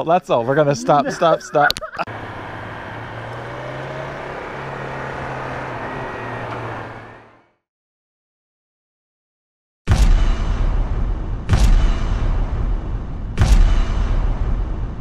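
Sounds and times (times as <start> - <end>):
road and wind noise: 0.5 - 7.6.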